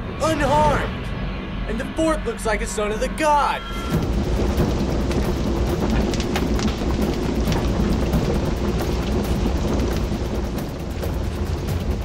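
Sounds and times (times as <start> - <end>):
fire crackles: 0.0 - 1.2, 3.8 - 12.0
fire roaring with deep rumble: 0.0 - 3.0, 3.8 - 12.0.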